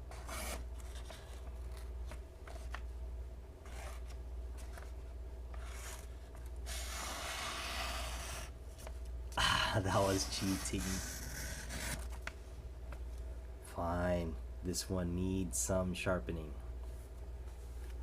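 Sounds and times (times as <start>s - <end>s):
knife rasping through paper: 0.1s - 1.4s, 6.7s - 8.5s, 10.0s - 12.0s.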